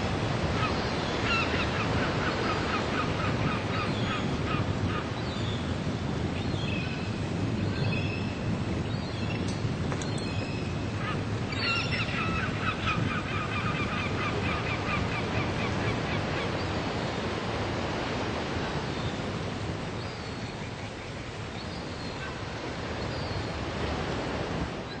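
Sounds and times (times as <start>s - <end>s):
sea surf washing: 0.0s - 25.0s
gull calls: 0.5s - 5.1s, 11.0s - 16.5s.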